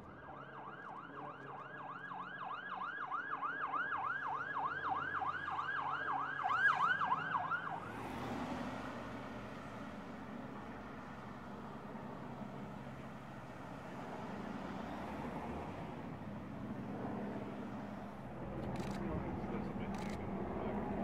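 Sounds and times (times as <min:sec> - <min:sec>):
vehicle noise: 0:05.0 - 0:21.0.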